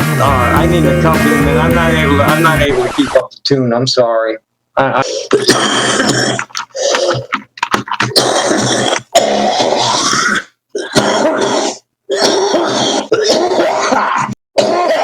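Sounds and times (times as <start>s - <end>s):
man coughing harshly: 10.8s - 15.0s.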